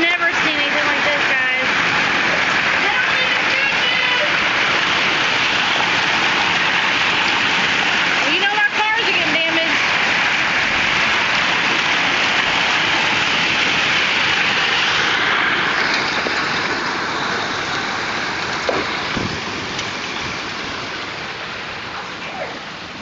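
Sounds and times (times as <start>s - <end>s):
hail and rain pelting: 0.0s - 23.0s
sharp knocks: 18.6s - 19.5s.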